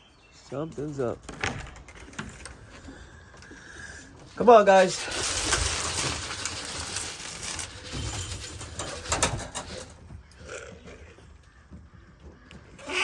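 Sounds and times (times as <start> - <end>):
rustling: 1.9 - 11.2
pigeons cooing: 7.9 - 13.0.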